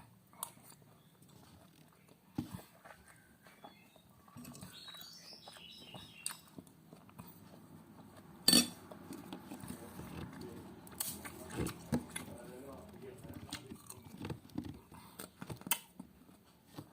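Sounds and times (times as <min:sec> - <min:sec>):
person chewing: 0:04.2 - 0:16.4
light spoon clinks: 0:08.5 - 0:08.8.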